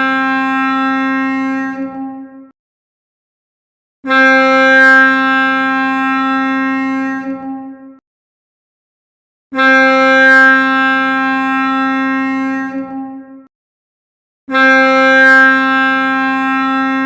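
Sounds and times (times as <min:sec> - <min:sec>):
ship horn blasts: 0:00.0 - 0:02.5, 0:04.0 - 0:08.0, 0:09.5 - 0:13.5, 0:14.5 - 0:17.0.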